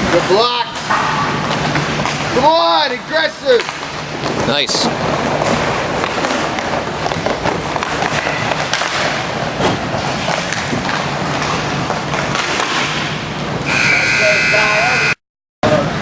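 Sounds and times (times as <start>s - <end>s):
hockey sticks and puck clacking: 0.0s - 2.6s, 3.2s - 13.1s
skate wheels rolling on floor: 1.4s - 13.7s.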